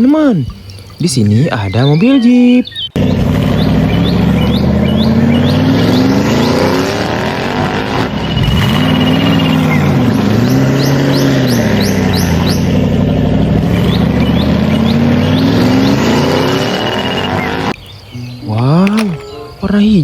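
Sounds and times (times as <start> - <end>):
car engine revving: 3.0 - 17.8
short high chirps: 17.1 - 19.8.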